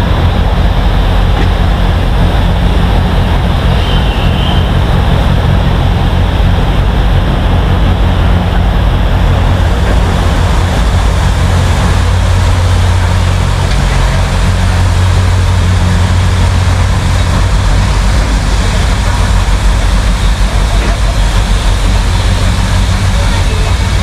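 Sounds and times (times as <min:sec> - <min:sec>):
diesel locomotive rumbling: 0:00.0 - 0:24.0.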